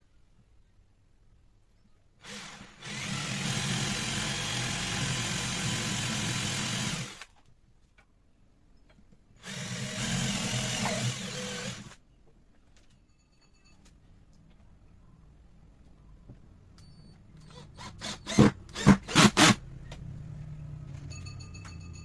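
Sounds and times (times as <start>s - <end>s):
electric power tool running: 2.3s - 7.2s, 9.4s - 12.0s.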